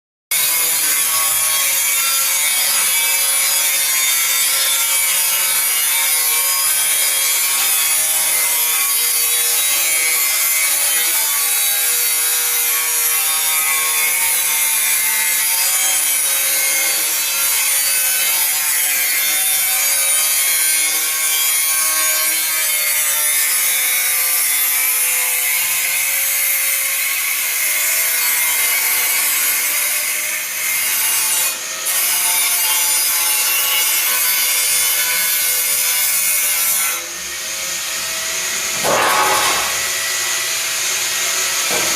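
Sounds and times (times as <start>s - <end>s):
power grinder grinding: 0.3s - 41.9s.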